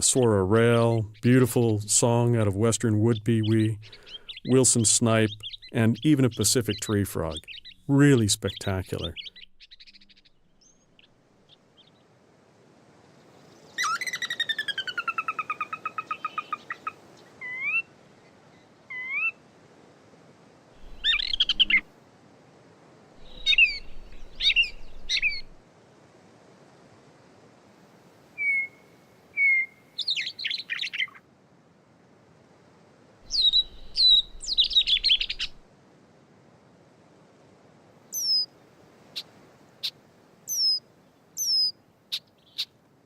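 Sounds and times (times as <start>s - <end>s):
catbird singing: 0.0s - 11.1s, 20.8s - 21.9s, 23.2s - 25.6s, 29.4s - 31.2s, 33.3s - 35.6s, 38.1s - 38.5s, 40.5s - 40.8s, 41.4s - 42.7s.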